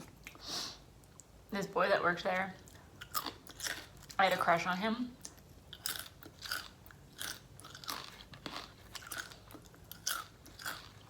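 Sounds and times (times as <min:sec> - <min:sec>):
chewing crunchy food: 0:02.4 - 0:11.0.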